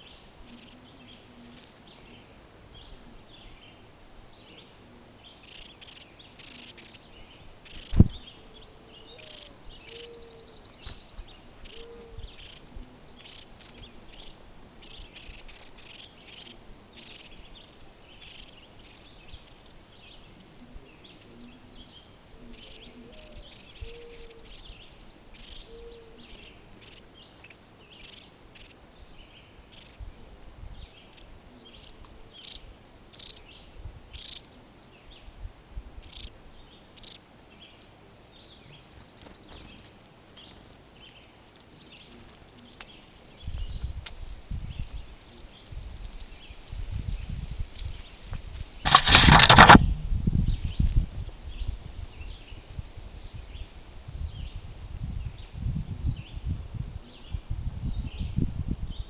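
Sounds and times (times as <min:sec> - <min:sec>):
low bird call: 0:00.0 - 0:17.5, 0:20.2 - 0:28.8.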